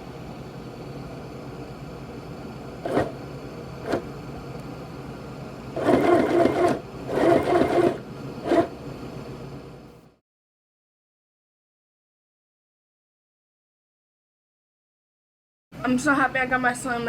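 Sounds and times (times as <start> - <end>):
sewing machine stitching: 2.8 - 3.2, 3.8 - 4.1, 5.8 - 8.8.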